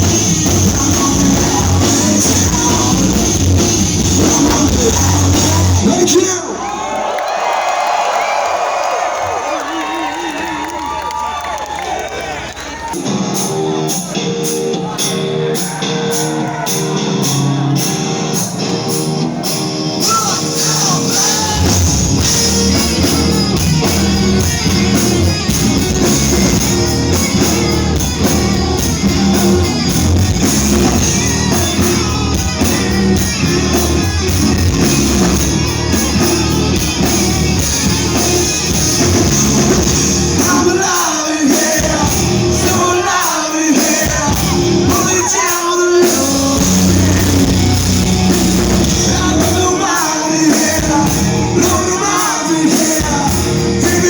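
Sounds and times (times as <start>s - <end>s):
rock band playing: 0.0s - 6.6s, 12.2s - 54.0s
guitar riff: 13.0s - 54.0s
person singing or shouting: 20.0s - 25.0s, 40.3s - 47.7s, 48.8s - 54.0s.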